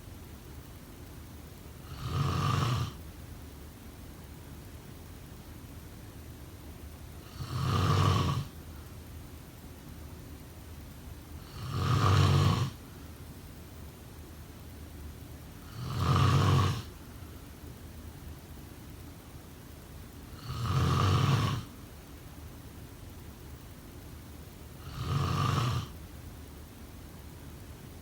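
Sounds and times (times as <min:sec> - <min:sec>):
faint steady hiss: 0:00.0 - 0:28.0
person snoring: 0:01.8 - 0:03.0, 0:07.2 - 0:08.5, 0:11.5 - 0:12.8, 0:15.6 - 0:16.9, 0:20.4 - 0:21.7, 0:24.8 - 0:26.0.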